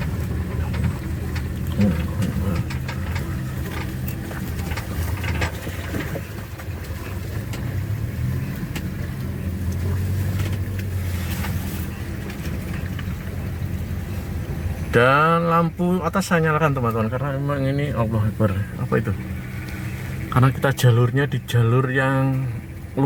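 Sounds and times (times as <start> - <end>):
knocks and rattles: 0.0 - 14.7
engine hum and road noise: 0.0 - 23.0.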